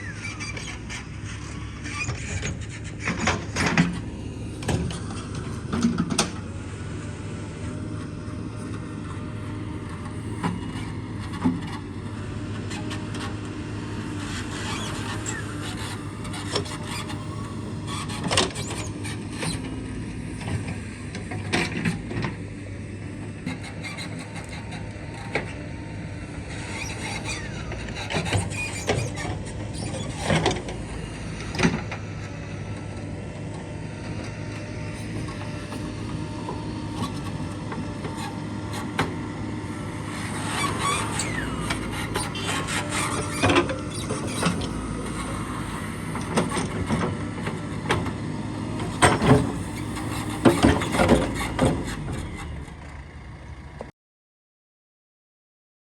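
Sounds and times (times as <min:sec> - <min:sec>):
bucket linkage squeaks: 0:00.0 - 0:03.8, 0:14.2 - 0:19.7, 0:23.4 - 0:25.6, 0:26.4 - 0:31.6, 0:34.8 - 0:47.1, 0:48.8 - 0:52.7
diesel machinery running: 0:00.0 - 0:53.9.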